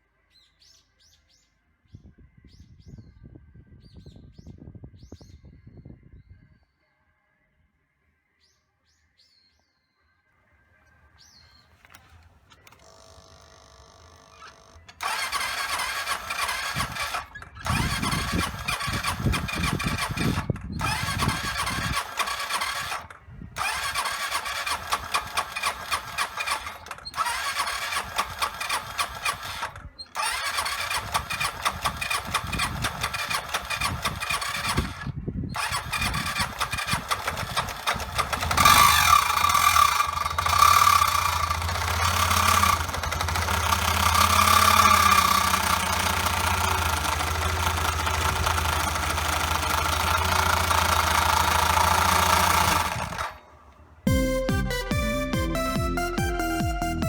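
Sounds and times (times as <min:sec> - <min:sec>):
scooter engine clattering: 0:11.8 - 0:54.7.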